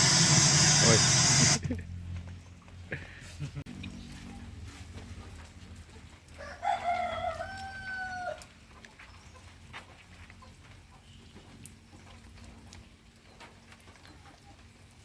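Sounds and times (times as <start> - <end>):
rooster crowing: 6.4 - 8.5.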